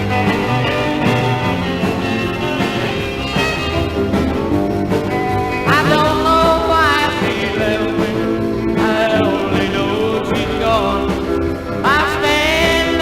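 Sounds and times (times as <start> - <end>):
full band playing: 0.0 - 13.0
person singing: 5.6 - 13.0.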